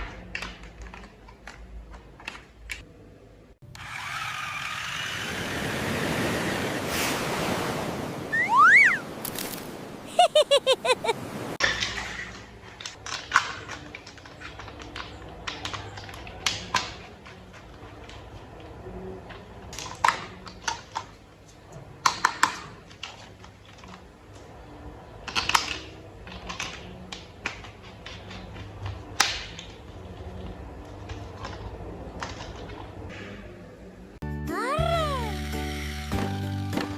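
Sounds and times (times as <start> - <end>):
short pitched chirps: 8.3 - 9.0.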